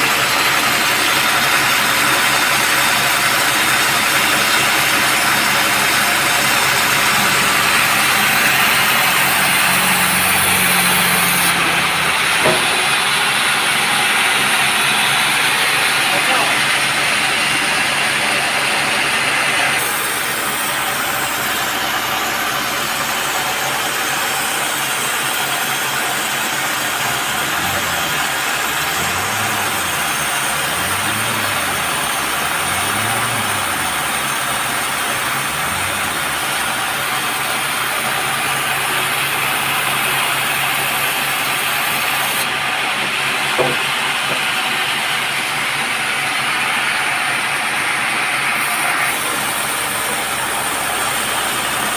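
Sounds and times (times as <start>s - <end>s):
sawmill machinery running: 0.0s - 51.9s.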